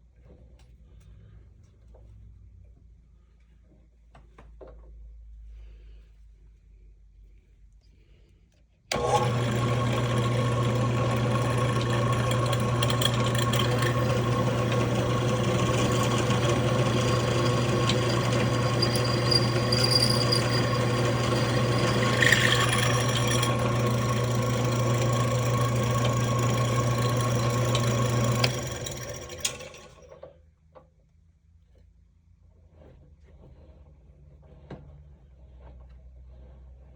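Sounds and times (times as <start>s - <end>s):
electric drill boring into metal: 8.9s - 30.0s.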